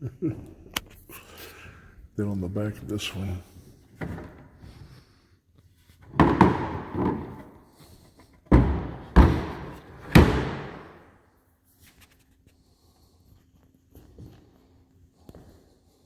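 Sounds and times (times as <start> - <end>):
heavy wooden thumps and knocks: 6.0 - 7.6, 8.5 - 11.0.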